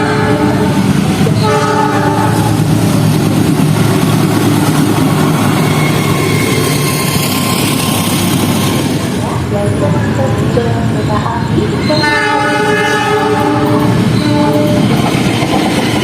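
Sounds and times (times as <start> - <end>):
multi-tone locomotive horn blasts: 0.0 - 2.6, 11.8 - 15.0
train rumbling on rails: 0.0 - 16.0.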